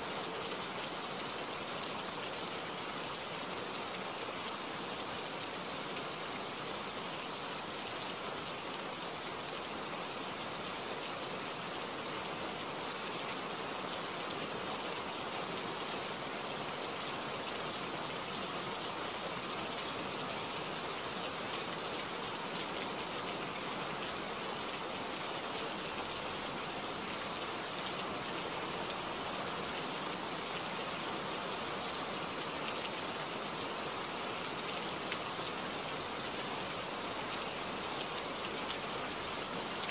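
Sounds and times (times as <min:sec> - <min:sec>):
steady rain in forest: 0:00.0 - 0:39.9.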